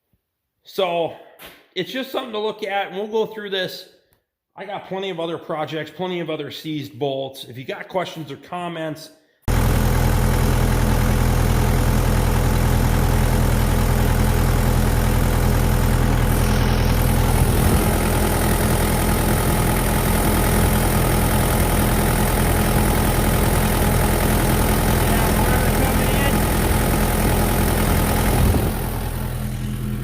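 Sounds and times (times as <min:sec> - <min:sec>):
tractor diesel engine running: 0:09.5 - 0:30.0.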